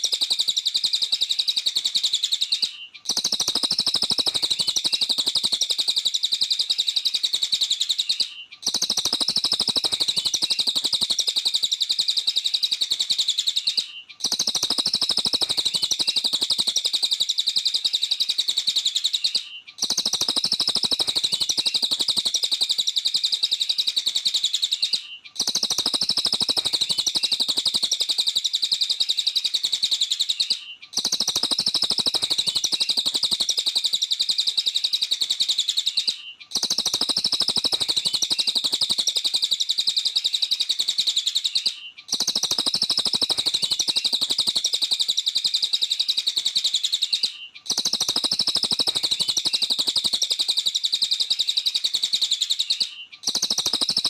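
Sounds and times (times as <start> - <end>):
songbird chattering song: 0.0 - 54.0.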